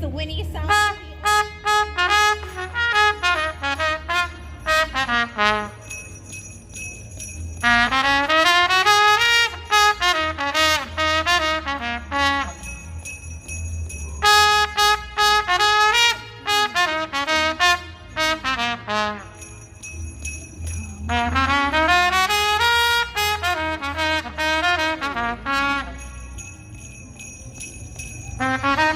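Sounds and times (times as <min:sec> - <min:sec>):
solo trumpet melody: 0:00.6 - 0:06.0, 0:07.6 - 0:12.8, 0:14.2 - 0:19.5, 0:21.1 - 0:26.2, 0:28.4 - 0:28.9.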